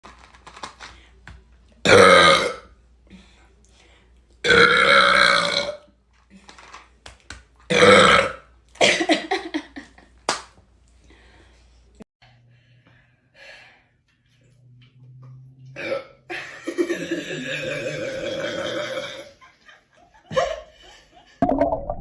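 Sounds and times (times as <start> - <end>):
loud burps: 1.8 - 2.7, 4.4 - 5.9, 7.7 - 9.0, 15.8 - 16.2, 17.0 - 19.4.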